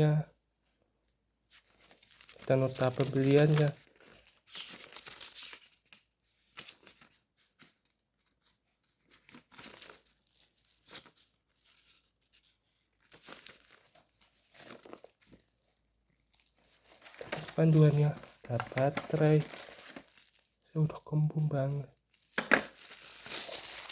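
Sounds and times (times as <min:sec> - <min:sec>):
packaging rustling and crinkling: 0:01.5 - 0:23.9.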